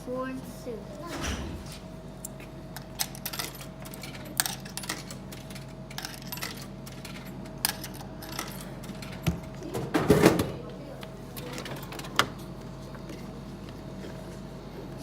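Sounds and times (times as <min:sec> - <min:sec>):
coins clinking into vending machine: 0:02.8 - 0:10.4.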